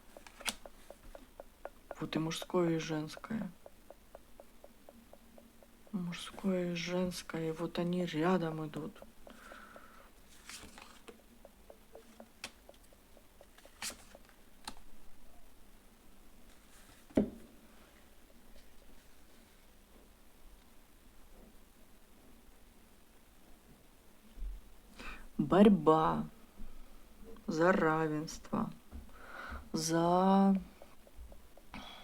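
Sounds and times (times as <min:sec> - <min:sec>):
cards handled with soft clicks: 0:00.2 - 0:00.7, 0:10.3 - 0:11.1, 0:13.6 - 0:14.8
sharp card taps: 0:00.2 - 0:01.3, 0:13.5 - 0:14.8.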